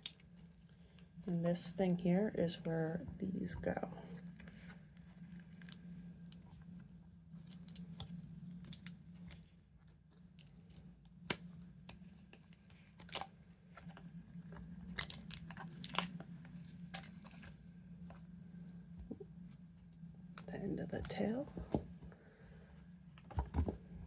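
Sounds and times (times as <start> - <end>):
low steady hum: 0.0 - 24.0
peeling and rustling: 3.6 - 21.9.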